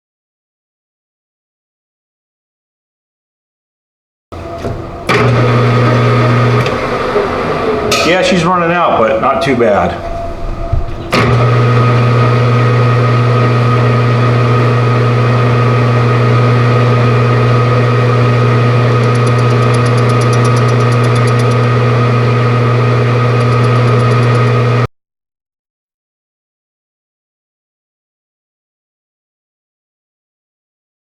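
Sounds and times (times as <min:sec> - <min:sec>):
lathe motor hum: 0:04.4 - 0:24.9
faint rapid ticking: 0:18.8 - 0:21.8, 0:23.3 - 0:24.6.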